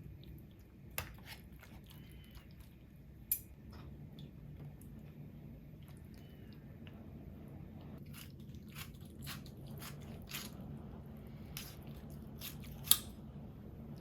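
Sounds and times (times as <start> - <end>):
crunchy chewing: 8.0 - 10.6.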